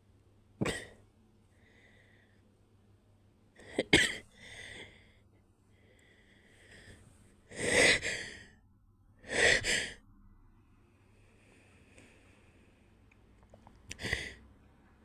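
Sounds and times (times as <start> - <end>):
stifled sneezes: 0.6 - 1.0, 3.6 - 4.3
person breathing: 1.5 - 2.5, 4.3 - 8.6, 10.9 - 13.1, 13.9 - 14.5.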